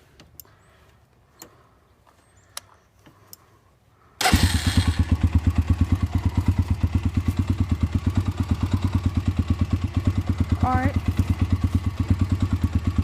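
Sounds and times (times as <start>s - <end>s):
faint clicks: 0.2s - 3.5s
atv engine starting and idling: 4.2s - 13.0s.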